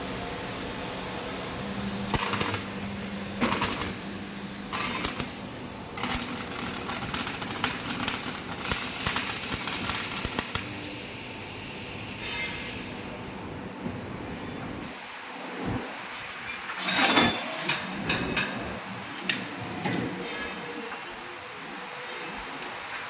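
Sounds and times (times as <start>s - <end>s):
machine hum: 0.1s - 10.9s.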